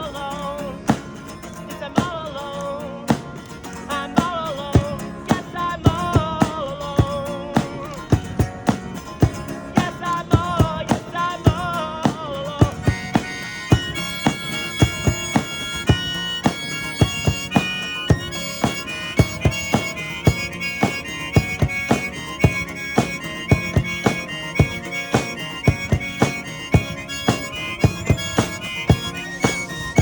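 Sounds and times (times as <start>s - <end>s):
accompaniment with steady beat: 0.0s - 30.0s
harmonica solo: 12.6s - 30.0s.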